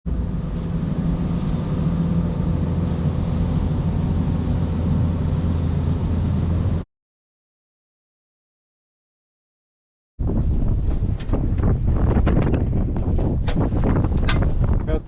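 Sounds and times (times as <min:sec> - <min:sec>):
large engine droning: 0:00.1 - 0:06.8.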